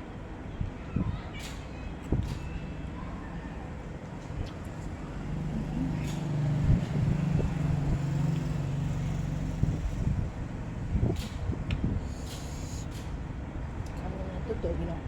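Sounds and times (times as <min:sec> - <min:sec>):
vehicle engine passing by: 0:04.8 - 0:11.2.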